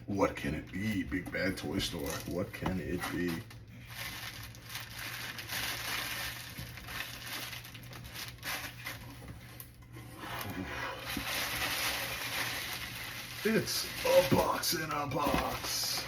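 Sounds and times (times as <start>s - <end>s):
cardboard rustling and scraping: 5.7s - 16.0s.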